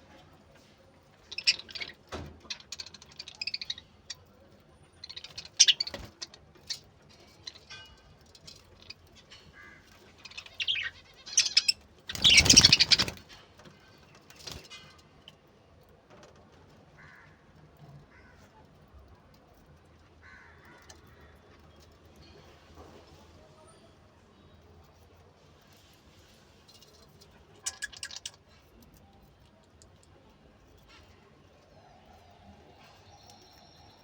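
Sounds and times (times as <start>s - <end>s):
budgerigars chirping and chattering: 1.2s - 13.4s, 27.5s - 28.6s.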